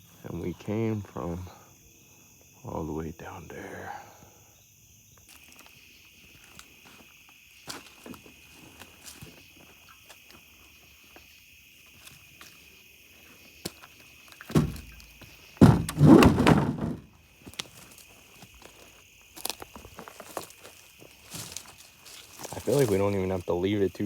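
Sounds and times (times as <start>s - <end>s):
heavy thump: 14.5s - 15.0s, 15.6s - 17.1s
rough knocking and scraping: 14.5s - 17.1s
high insect trilling: 17.3s - 24.0s.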